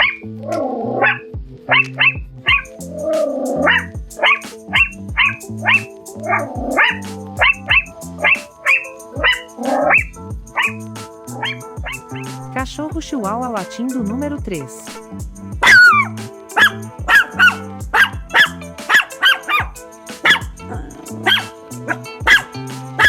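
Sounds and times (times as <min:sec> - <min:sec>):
background music with held chords: 0:00.0 - 0:23.0
small dog yapping: 0:22.3 - 0:22.5.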